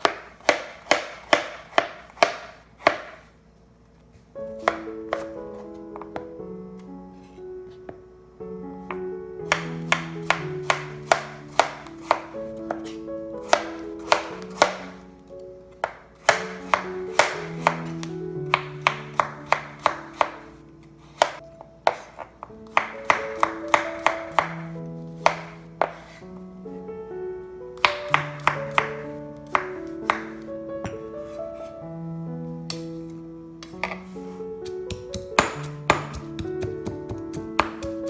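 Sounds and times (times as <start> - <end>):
knife chopping on cutting board: 0.0 - 3.3, 9.5 - 14.9, 15.8 - 20.4, 21.1 - 24.6, 25.2 - 26.2, 27.8 - 31.4, 33.6 - 38.0
background music with held notes: 4.4 - 38.0.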